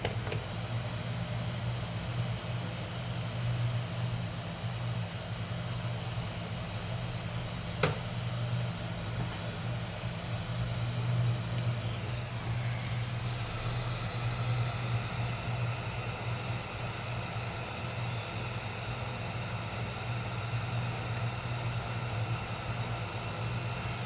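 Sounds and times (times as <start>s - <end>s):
hot-air blower hissing: 0.0s - 24.0s
sharp click: 7.8s - 8.1s.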